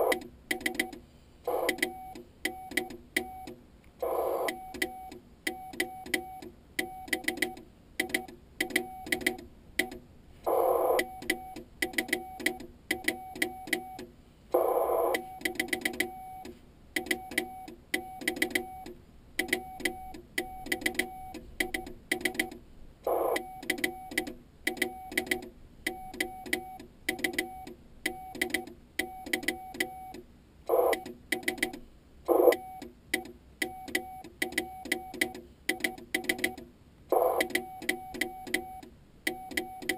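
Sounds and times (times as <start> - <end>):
morse code tone beeps: 0.0 - 0.9, 1.5 - 31.7, 32.3 - 32.9, 33.6 - 39.9
morse key contacts clicking: 4.5 - 10.0, 15.4 - 22.6, 23.6 - 30.2, 32.5 - 36.7.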